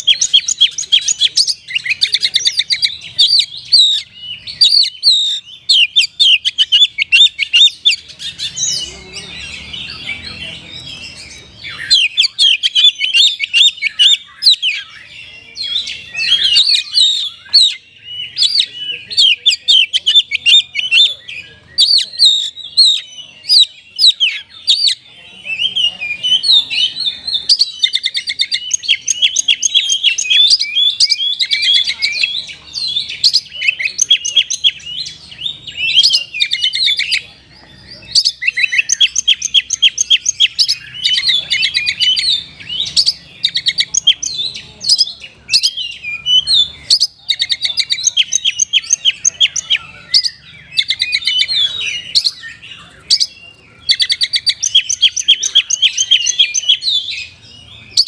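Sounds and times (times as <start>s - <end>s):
bird singing rapid chirps and trills: 0.0s - 58.0s.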